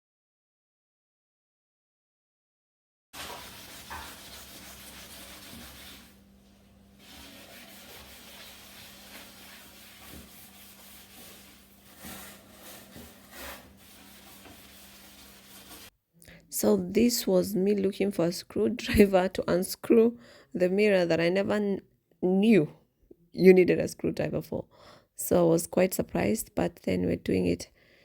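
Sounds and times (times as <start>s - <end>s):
scrubbing on hard surface: 3.2s - 15.9s.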